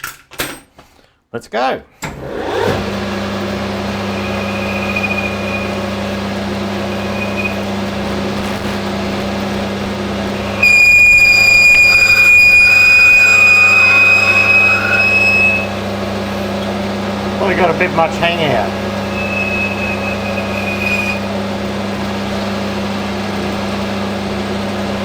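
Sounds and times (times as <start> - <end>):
metal lathe humming: 2.0 - 25.0
high-pitched tool squeal: 3.8 - 9.0, 10.3 - 16.8, 17.5 - 21.5.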